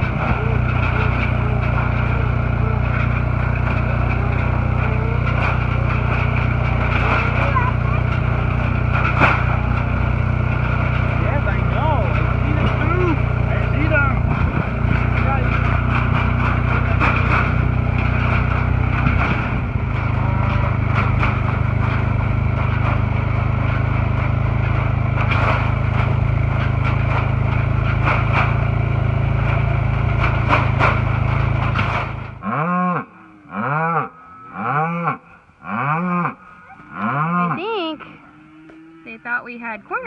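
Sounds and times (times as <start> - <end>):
cattle mooing: 0.0 - 23.6, 32.4 - 39.8
vehicle engine running: 0.0 - 32.6.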